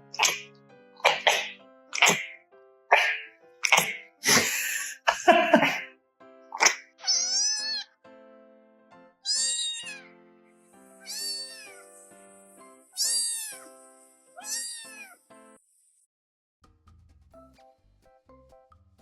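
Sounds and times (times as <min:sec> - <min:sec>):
background music: 0:00.0 - 0:15.6, 0:16.6 - 0:19.0
cat meowing: 0:06.9 - 0:08.0, 0:09.2 - 0:10.2, 0:11.0 - 0:11.8, 0:13.0 - 0:13.7, 0:14.4 - 0:15.2.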